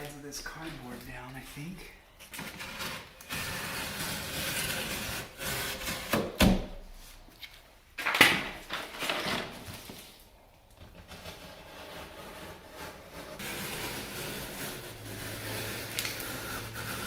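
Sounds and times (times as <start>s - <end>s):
cardboard box scraping: 11.0s - 17.0s.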